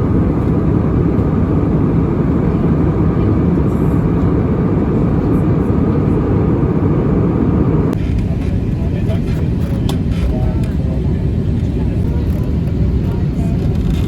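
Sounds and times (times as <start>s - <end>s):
jet airliner engine noise: 0.0s - 14.0s.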